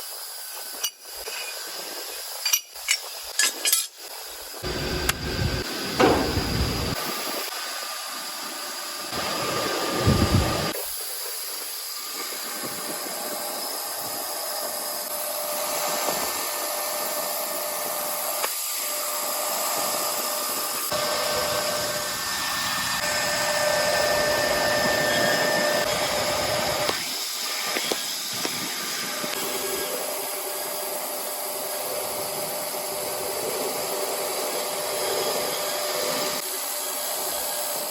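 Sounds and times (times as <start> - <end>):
milling machine cutting metal: 0.6 - 10.8, 11.9 - 37.9
low thumps: 4.8 - 7.0.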